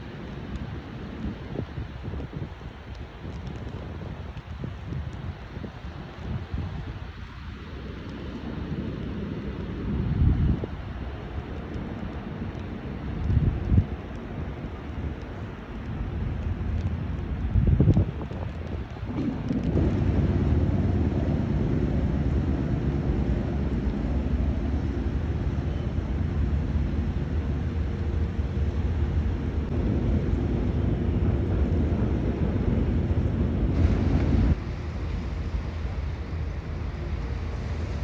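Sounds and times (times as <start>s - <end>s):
wind noise on microphone: 0.0s - 38.0s
low engine hum: 7.7s - 38.0s.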